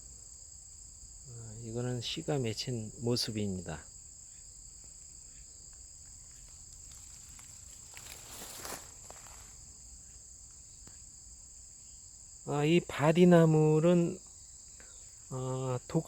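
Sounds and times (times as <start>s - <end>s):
insect chorus shrilling: 0.0s - 16.0s
brief rustle: 6.3s - 9.5s.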